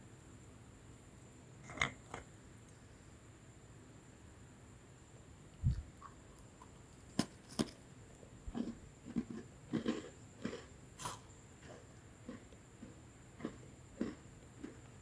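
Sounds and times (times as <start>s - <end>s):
biscuit crunching when chewed: 8.5s - 14.9s.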